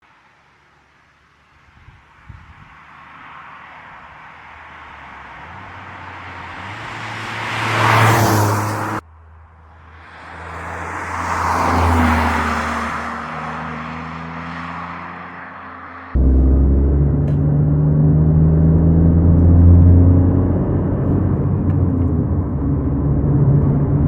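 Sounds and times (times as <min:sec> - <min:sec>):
road and tyre noise: 0:00.0 - 0:24.0
car engine accelerating: 0:10.2 - 0:24.0.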